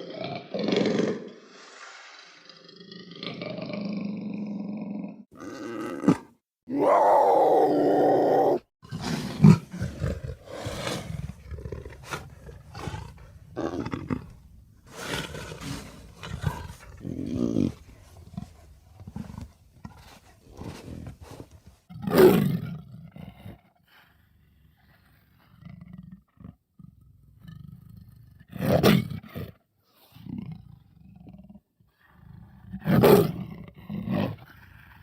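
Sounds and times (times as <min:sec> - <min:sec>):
big cat growls and snarls: 0:00.0 - 0:35.0
big cat roaring: 0:02.4 - 0:23.5.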